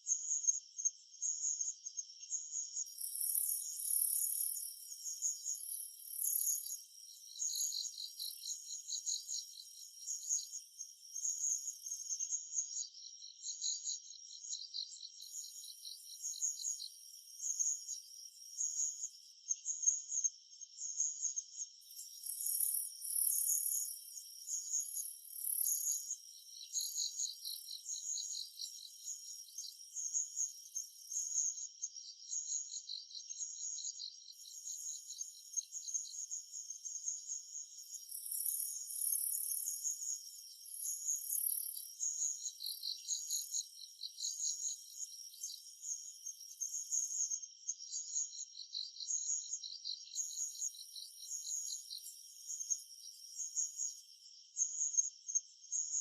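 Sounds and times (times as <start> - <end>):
insects chirping: 0.0 - 56.0
shrill insect trill: 2.7 - 19.7, 21.8 - 56.0.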